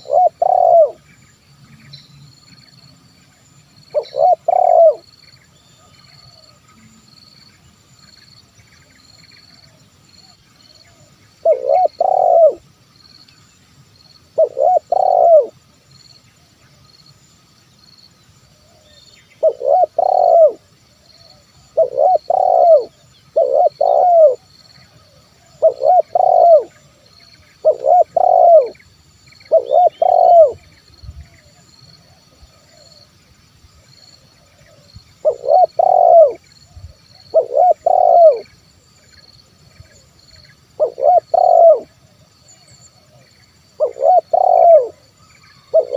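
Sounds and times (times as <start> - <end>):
dove cooing: 0.0 - 1.0, 3.9 - 5.1, 10.9 - 12.6, 14.4 - 15.6, 19.4 - 28.8, 29.5 - 30.7, 34.4 - 38.5, 40.8 - 43.2, 43.8 - 45.9.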